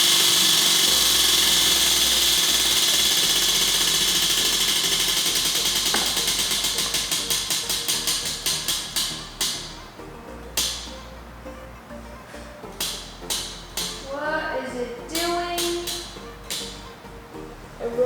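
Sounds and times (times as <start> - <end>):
prize wheel pointer clicking: 0.0 - 9.7, 15.1 - 16.9.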